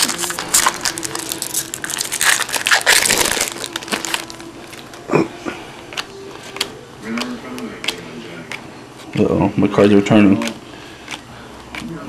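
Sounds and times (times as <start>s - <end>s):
plastic wrapper crinkling: 0.0s - 5.1s.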